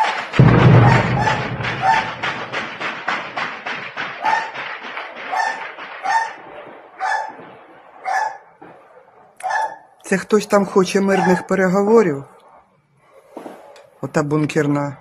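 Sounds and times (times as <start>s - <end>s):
fast sharp cracks: 0.0s - 9.6s
dog barking: 5.3s - 9.9s, 11.1s - 11.6s.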